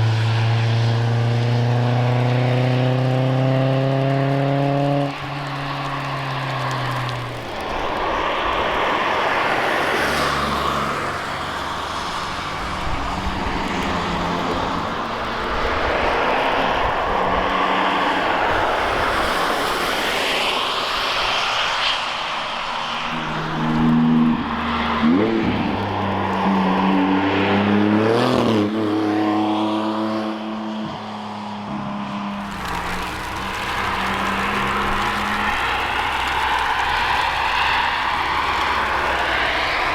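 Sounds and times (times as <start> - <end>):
cars passing: 0.0 - 39.9
steady rushing noise: 5.1 - 27.2, 32.3 - 39.9.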